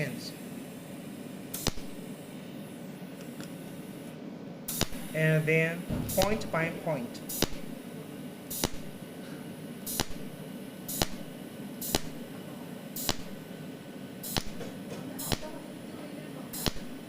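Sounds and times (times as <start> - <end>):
low machine hum: 0.0 - 17.0
welding pulse snaps: 1.5 - 2.0, 4.7 - 5.2, 5.8 - 7.8, 8.5 - 9.0, 9.8 - 12.3, 12.9 - 13.5, 14.2 - 15.6, 16.5 - 17.0.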